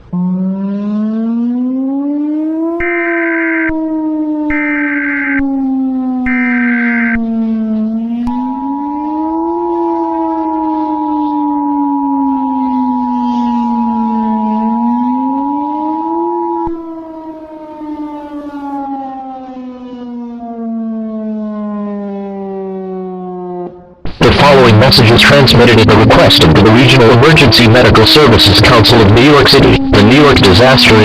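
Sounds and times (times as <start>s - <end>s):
wailing civil defense siren: 0.0s - 31.0s
steady two-note alert tone: 2.8s - 3.8s, 6.3s - 7.3s.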